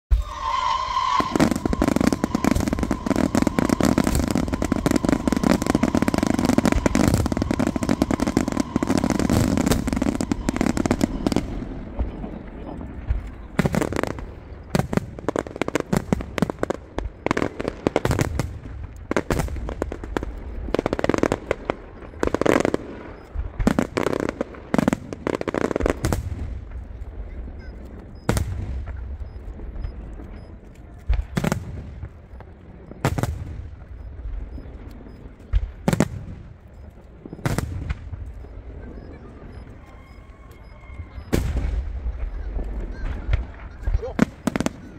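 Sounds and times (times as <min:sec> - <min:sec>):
fireworks crackling and booming: 0:00.1 - 0:44.9.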